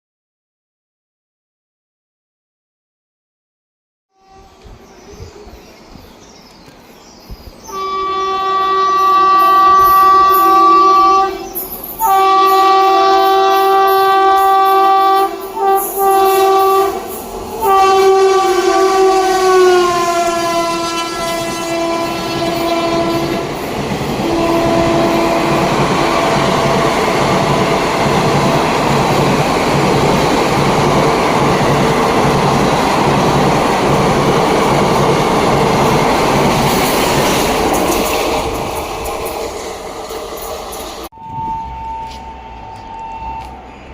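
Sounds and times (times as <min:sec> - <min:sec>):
train horn blasts: 0:04.1 - 0:04.7, 0:07.7 - 0:23.6, 0:24.2 - 0:28.7, 0:41.2 - 0:43.7.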